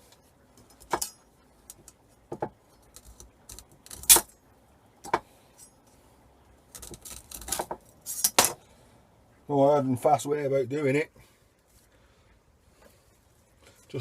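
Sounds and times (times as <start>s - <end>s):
metallic clinks and knocks: 0.6s - 2.0s
knife stripping cable: 2.8s - 4.4s, 6.7s - 8.4s.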